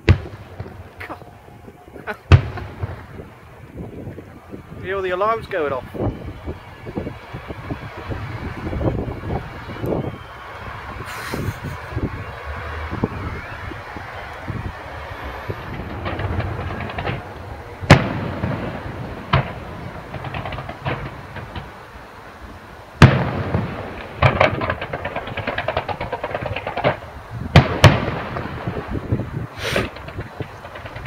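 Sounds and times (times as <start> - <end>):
fireworks crackling: 0.0 - 31.0
firework shells bursting: 13.8 - 21.9, 23.0 - 31.0.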